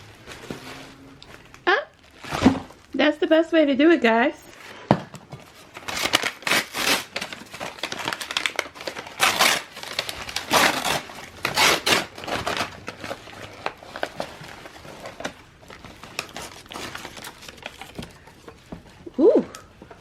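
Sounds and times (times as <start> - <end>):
packing material crinkling: 0.0 - 3.0, 5.4 - 19.0.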